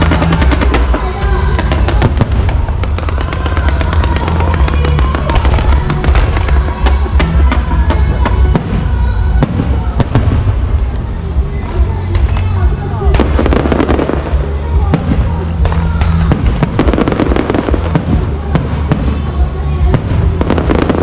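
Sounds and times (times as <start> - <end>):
fireworks bangs and crackles: 0.0 - 21.0
loud music: 0.0 - 21.0.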